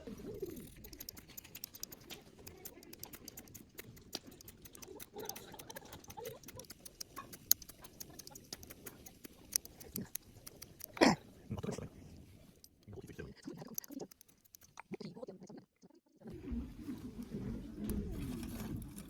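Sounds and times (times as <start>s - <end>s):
campfire crackling and popping: 0.2s - 11.1s.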